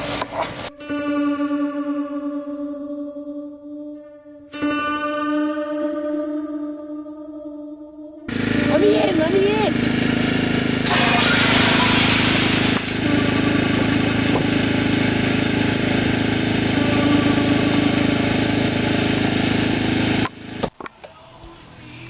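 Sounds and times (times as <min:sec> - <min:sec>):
engine idling: 0:08.3 - 0:22.0.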